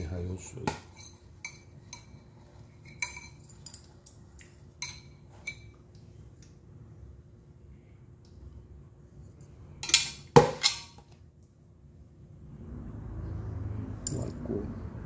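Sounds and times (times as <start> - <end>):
dishware clinking in a pot: 0.6 - 5.8.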